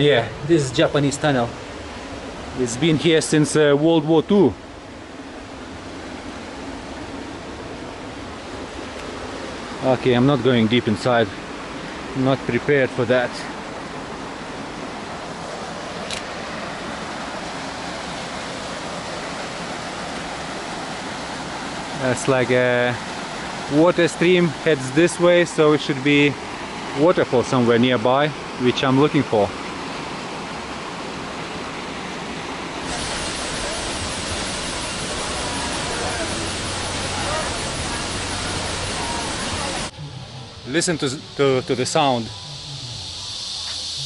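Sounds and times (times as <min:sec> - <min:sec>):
stream water flowing: 0:00.0 - 0:44.0
high insect chorus: 0:32.9 - 0:44.0.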